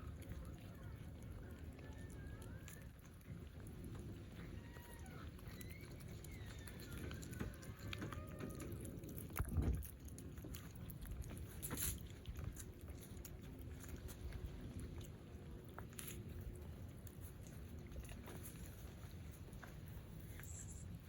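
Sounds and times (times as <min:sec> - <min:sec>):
person chewing: 0:05.2 - 0:21.0.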